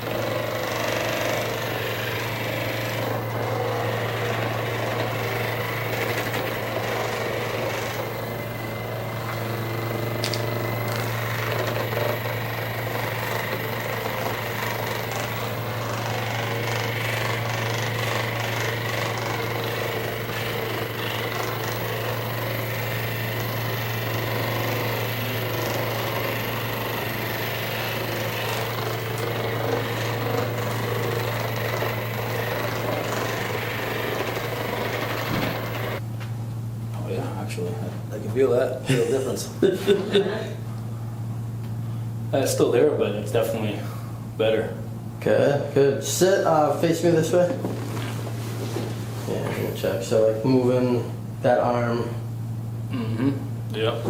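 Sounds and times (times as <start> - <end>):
percussion massager hammering buzz: 0.0 - 36.1.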